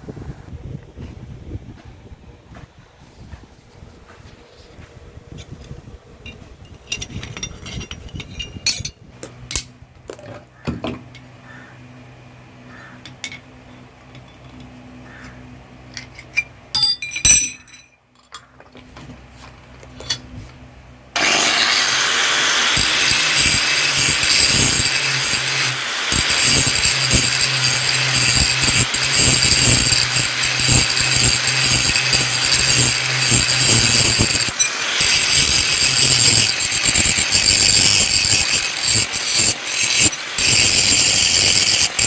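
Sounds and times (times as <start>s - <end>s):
metal tools clinking: 5.4s - 9.8s, 15.9s - 18.5s, 19.9s - 20.3s, 22.6s - 42.0s
loud steady hissing: 21.2s - 42.0s.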